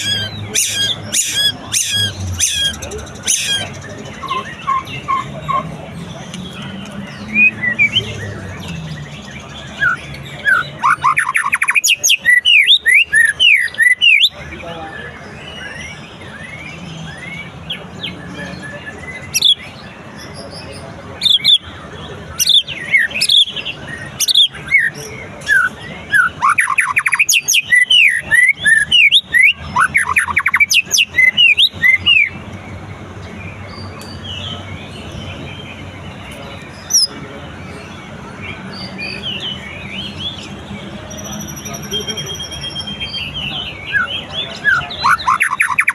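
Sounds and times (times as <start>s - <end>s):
bird whistling song: 0.0s - 5.6s, 7.1s - 14.4s, 22.4s - 32.4s, 38.7s - 45.9s.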